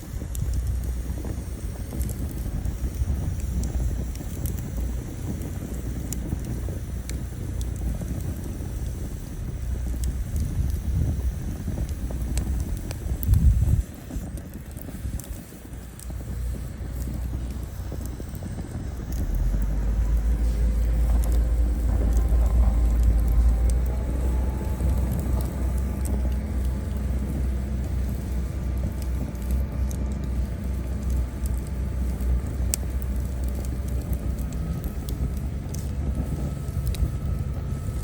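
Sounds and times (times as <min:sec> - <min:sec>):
steady low rumble: 0:00.0 - 0:38.0
wood campfire crackling: 0:00.0 - 0:38.0
faint drifting tones: 0:15.2 - 0:38.0.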